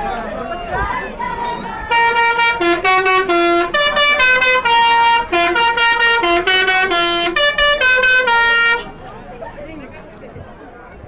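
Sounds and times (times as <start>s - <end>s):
bus horn playing melody: 1.9s - 9.1s.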